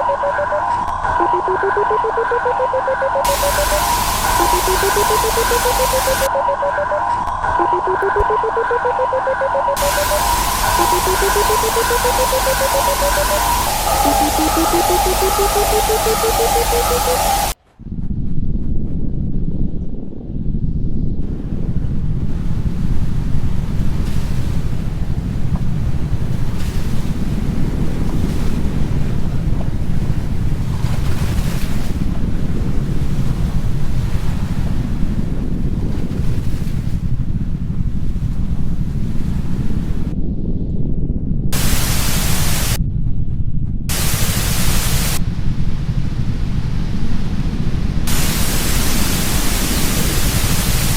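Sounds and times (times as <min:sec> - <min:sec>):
low rumbling noise: 0:00.0 - 0:26.6, 0:34.7 - 0:50.9
hissing swell: 0:01.4 - 0:06.3, 0:09.7 - 0:17.6, 0:48.1 - 0:50.9
harsh hiss: 0:03.3 - 0:06.3, 0:41.6 - 0:42.8, 0:43.9 - 0:45.2, 0:48.1 - 0:50.9.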